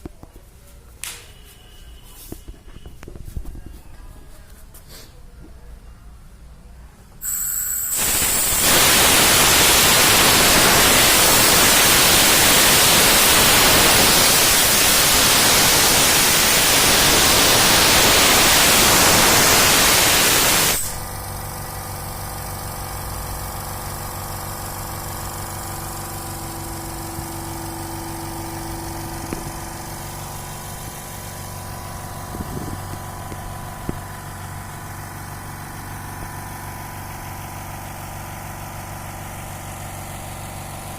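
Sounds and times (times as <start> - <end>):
compressed air hissing: 7.2 - 21.0
compressor motor humming: 7.2 - 39.3.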